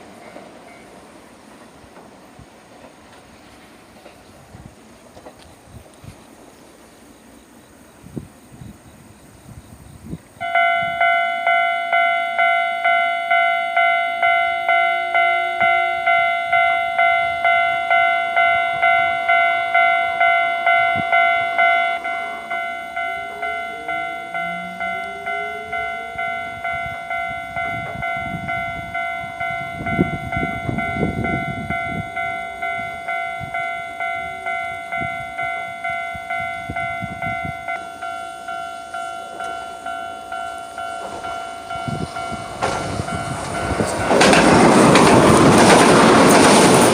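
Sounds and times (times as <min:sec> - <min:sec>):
train rumble and wheel noise: 0:00.0 - 0:46.9
level-crossing bell dinging: 0:10.4 - 0:44.4.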